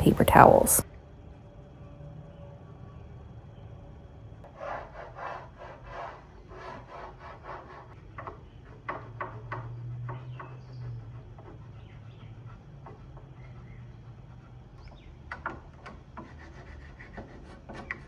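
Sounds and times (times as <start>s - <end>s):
hand scrubbing wood: 4.5s - 14.8s, 15.4s - 18.0s.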